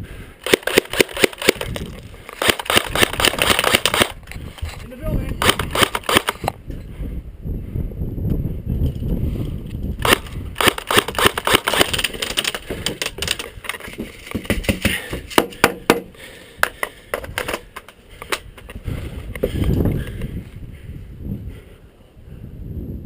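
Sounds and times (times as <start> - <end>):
airsoft gunfire: 0.4 - 1.7, 2.4 - 4.2, 5.4 - 6.4, 10.0 - 12.5.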